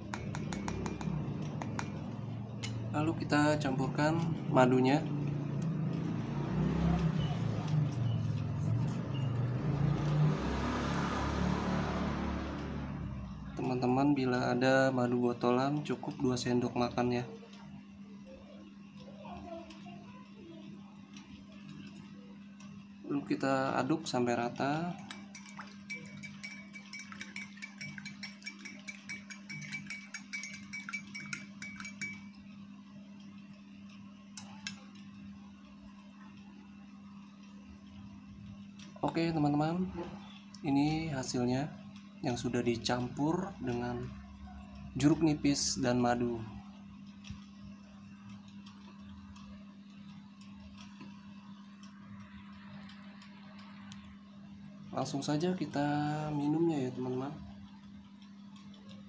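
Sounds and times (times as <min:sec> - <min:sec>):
low hum: 0:00.0 - 0:59.0
spoon clinking in a glass: 0:25.0 - 0:32.4.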